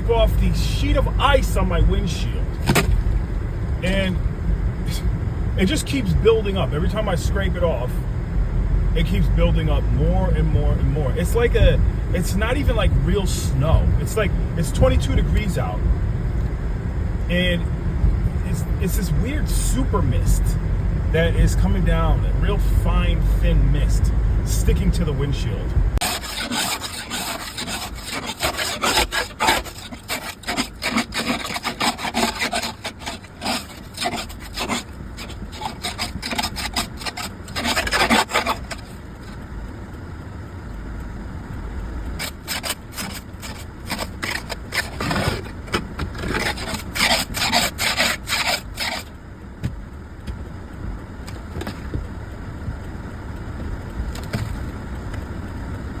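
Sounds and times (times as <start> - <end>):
ice scraper scraping windshield: 0.0 - 4.2, 5.6 - 7.9, 9.0 - 15.8, 18.5 - 20.6, 21.2 - 39.4, 42.1 - 49.1, 54.1 - 54.8.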